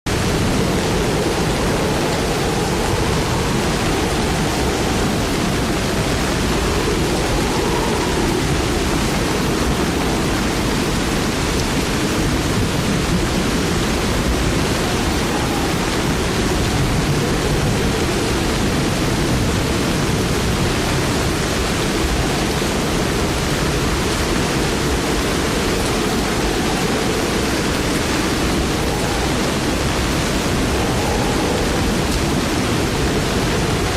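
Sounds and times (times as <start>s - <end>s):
loud rushing noise: 0.1s - 33.9s.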